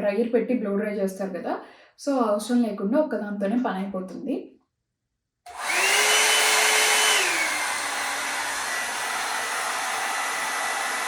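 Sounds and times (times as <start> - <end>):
hot air brush fan whine: 5.5 - 11.0.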